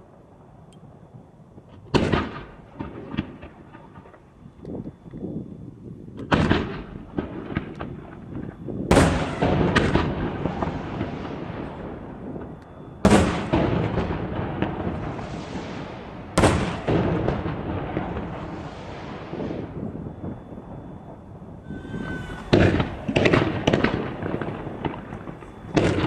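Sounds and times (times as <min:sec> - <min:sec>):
fireworks booming: 0:01.8 - 0:04.2, 0:06.2 - 0:26.0
fireworks crackling pops: 0:22.4 - 0:26.0.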